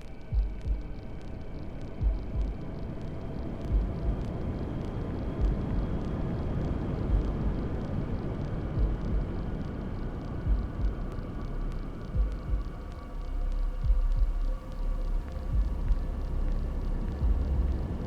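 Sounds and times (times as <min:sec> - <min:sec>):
fetal heartbeat thumps: 0:10.5 - 0:11.0, 0:12.2 - 0:12.8, 0:15.5 - 0:16.0.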